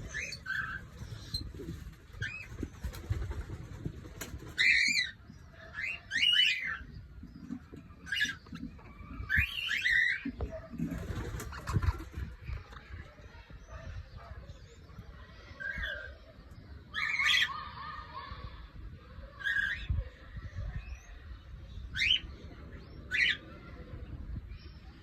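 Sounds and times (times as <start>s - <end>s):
cockatiels chirping and whistling: 9.2s - 10.5s.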